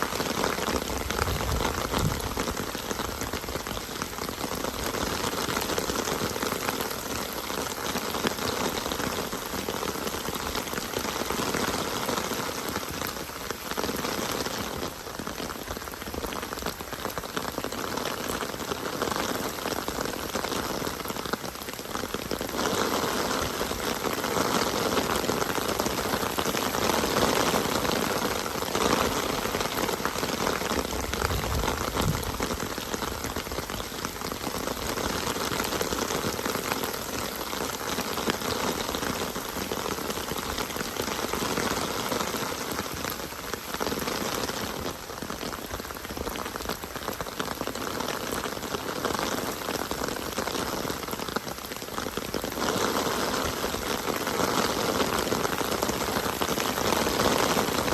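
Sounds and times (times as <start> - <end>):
steady rain patter: 0.0 - 57.9.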